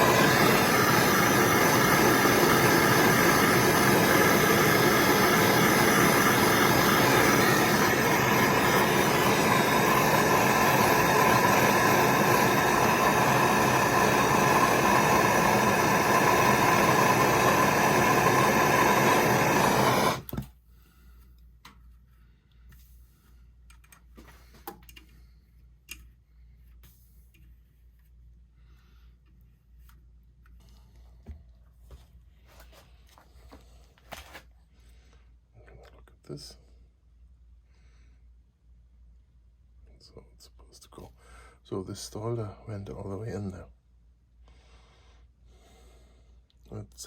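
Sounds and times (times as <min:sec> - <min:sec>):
gas torch hissing: 0:00.0 - 0:20.4.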